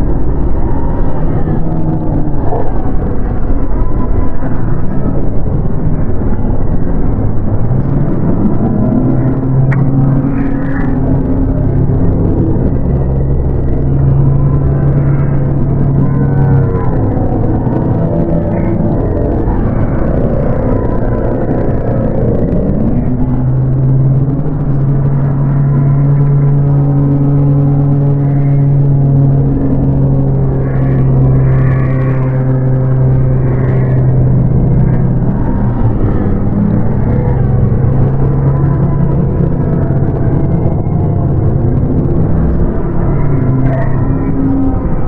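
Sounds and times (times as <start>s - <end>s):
dark ambient low drone: 0.0s - 45.0s
held low tones: 0.0s - 45.0s.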